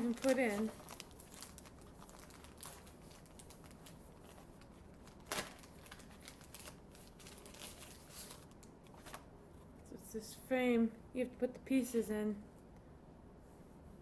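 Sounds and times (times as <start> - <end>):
packaging rustling and crinkling: 0.0 - 9.3.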